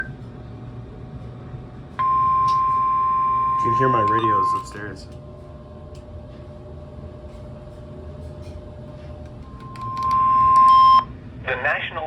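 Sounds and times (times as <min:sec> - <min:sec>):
faint lower tone: 0:02.0 - 0:04.8
steady high alarm tone: 0:02.0 - 0:05.1, 0:09.4 - 0:11.1.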